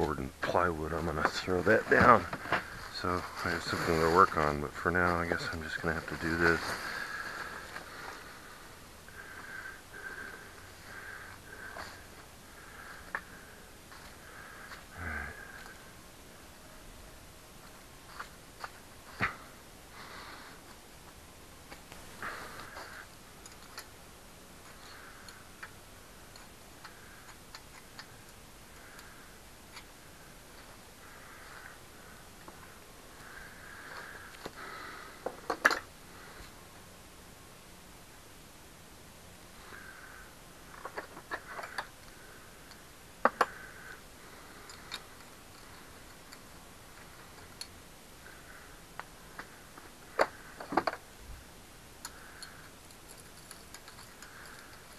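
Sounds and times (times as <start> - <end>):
soft scraping: 1.7 - 8.3.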